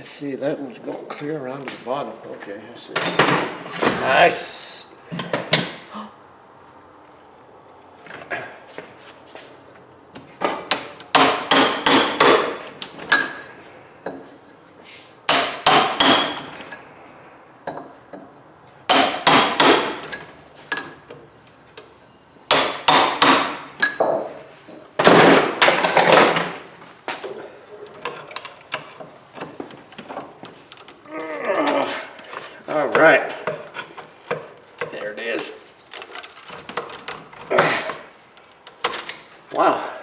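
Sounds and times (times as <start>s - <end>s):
hammer striking a punch: 10.8s - 12.6s, 15.3s - 16.5s, 18.9s - 20.0s, 22.5s - 23.6s.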